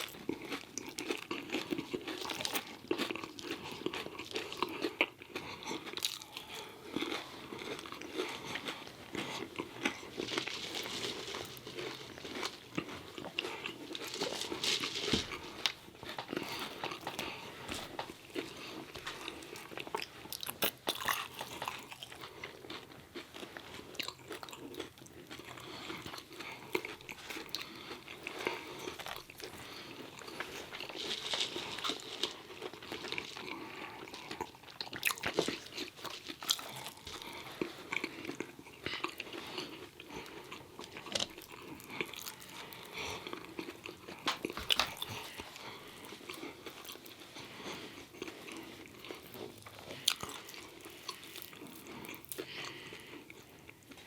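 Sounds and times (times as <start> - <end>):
crunchy bites and wet chewing: 0.0 - 54.0.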